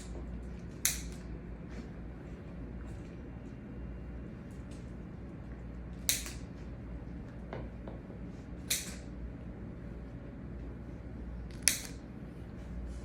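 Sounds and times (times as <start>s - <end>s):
lighter clicking: 0.8s - 1.2s, 6.0s - 6.4s, 8.7s - 9.0s, 11.5s - 12.0s.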